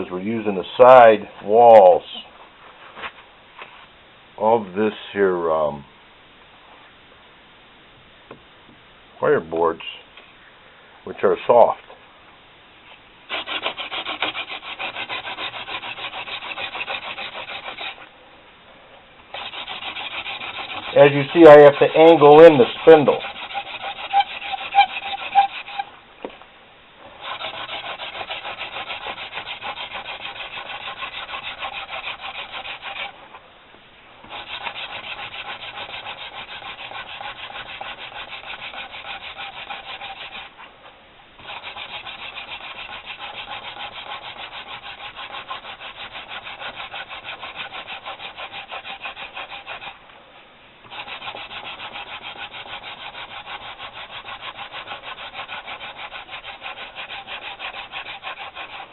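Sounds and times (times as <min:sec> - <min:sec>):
wood-on-wood rubbing: 0:13.3 - 0:18.1, 0:19.3 - 0:26.4, 0:27.1 - 0:33.4, 0:34.2 - 0:50.0, 0:50.8 - 0:58.9.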